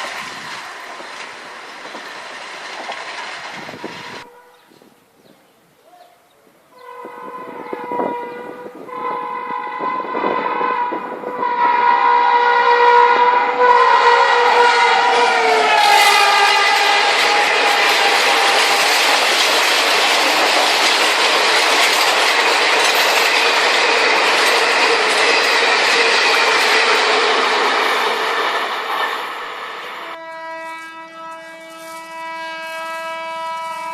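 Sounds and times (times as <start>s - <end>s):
train rushing past: 0.0s - 4.3s, 7.0s - 33.9s
wheels clattering on rail joints: 0.0s - 4.3s, 15.5s - 30.1s
locomotive horn blast: 6.7s - 19.1s, 30.0s - 33.9s.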